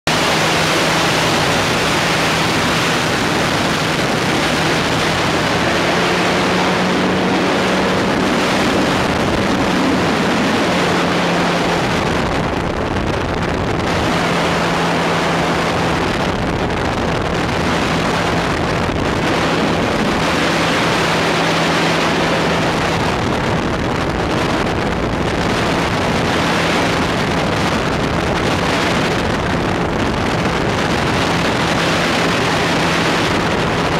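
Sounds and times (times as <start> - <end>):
engine and propeller hum: 0.0 - 33.9
wind rushing over microphone: 0.0 - 33.9.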